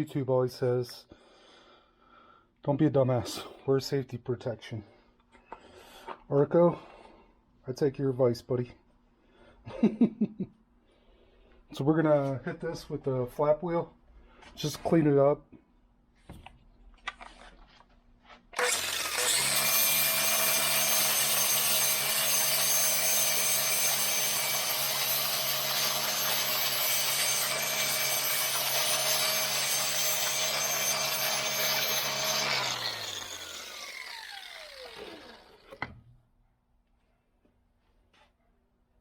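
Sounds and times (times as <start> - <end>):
power tool sanding steel: 18.6 - 35.8.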